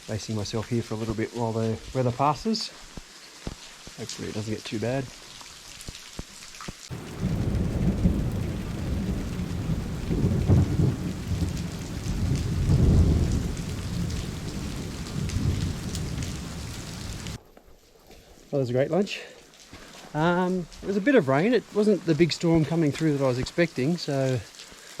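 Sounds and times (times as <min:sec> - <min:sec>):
heavy rain falling: 0:00.0 - 0:17.4, 0:19.4 - 0:25.0
rolling thunder rumble: 0:06.9 - 0:17.4.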